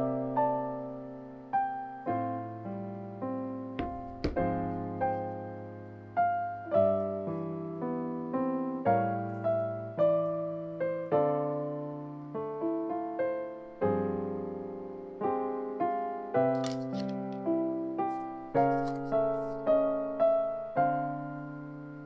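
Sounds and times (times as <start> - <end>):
slow gentle piano music: 0.0 - 22.0.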